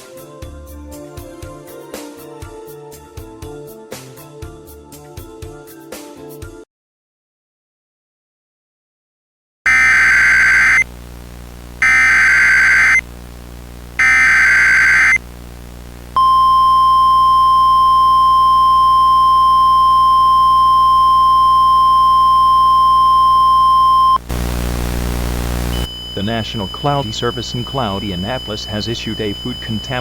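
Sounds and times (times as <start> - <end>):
digital data tone bursts: 9.7 - 10.9, 11.8 - 13.0, 14.0 - 15.2, 25.1 - 30.0.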